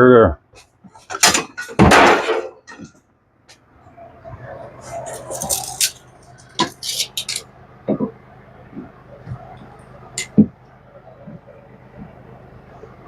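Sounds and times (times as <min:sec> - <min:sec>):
clinks and knocks: 0:05.0 - 0:08.1, 0:10.2 - 0:10.4.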